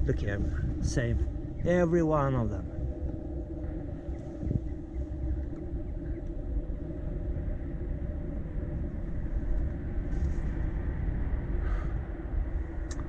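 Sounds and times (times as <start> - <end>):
low outdoor rumble: 0.0 - 13.0
faint rustles: 9.0 - 12.0.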